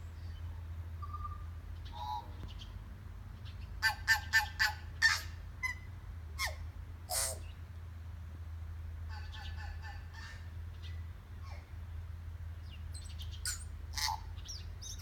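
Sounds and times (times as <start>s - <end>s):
songbird notes: 0.0s - 2.8s, 12.6s - 15.0s.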